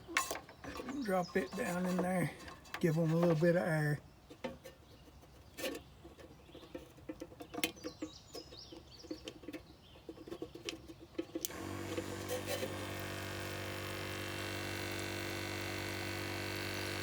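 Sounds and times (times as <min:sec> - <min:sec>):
aerator pump humming: 0:00.7 - 0:03.8, 0:11.4 - 0:17.0.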